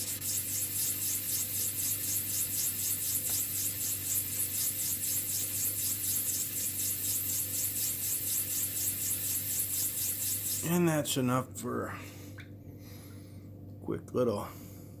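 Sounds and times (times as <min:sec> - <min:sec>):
stone rubbing on wet sandpaper: 0:00.0 - 0:10.7.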